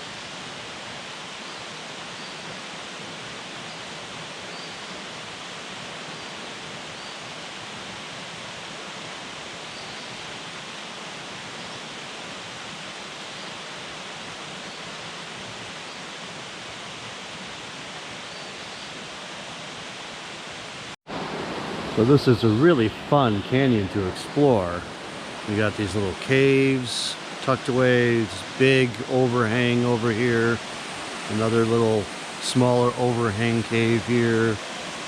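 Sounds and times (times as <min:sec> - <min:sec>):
small waterfall rushing: 0:00.0 - 0:35.0.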